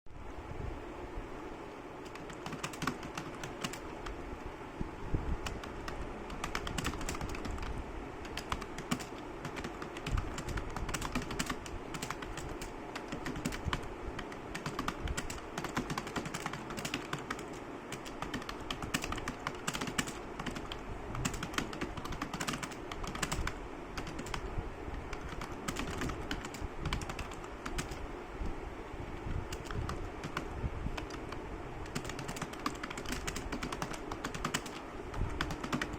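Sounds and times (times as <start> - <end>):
fast keyboard typing: 2.0 - 4.2, 5.4 - 28.1, 29.5 - 35.9.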